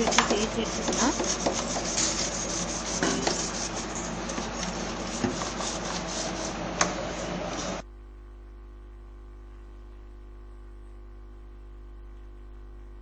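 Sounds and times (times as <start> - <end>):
brush scrubbing: 0.0 - 7.8.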